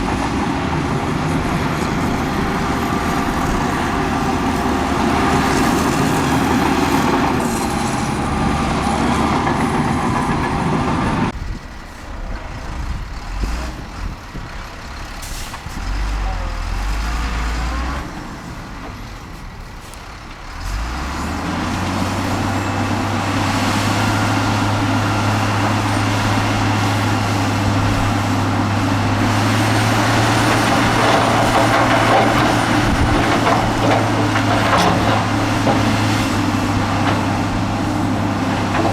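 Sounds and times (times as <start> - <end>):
diesel machinery engine rumble: 0.0 - 38.9.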